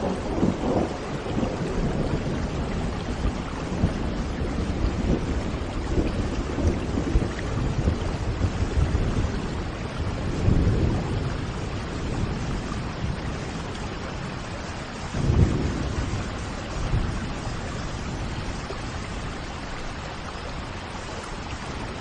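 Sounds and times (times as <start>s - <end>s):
rushing water: 0.0s - 22.0s.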